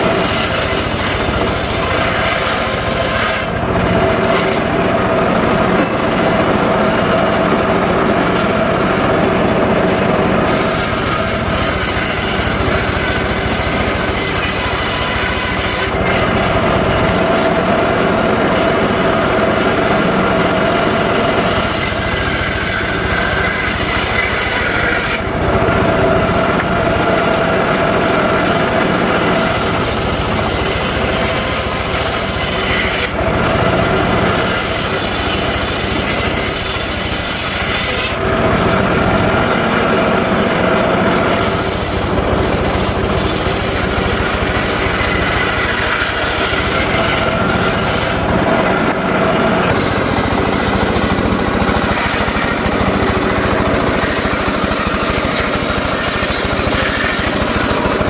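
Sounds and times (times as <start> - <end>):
circular saw cutting wood: 0.0 - 58.0.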